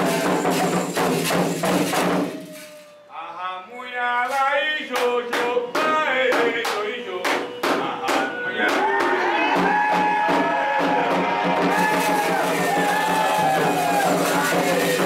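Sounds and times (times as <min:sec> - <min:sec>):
sharp percussion strikes: 0:00.0 - 0:03.0, 0:09.5 - 0:15.0
drums: 0:00.0 - 0:03.1, 0:05.4 - 0:15.0.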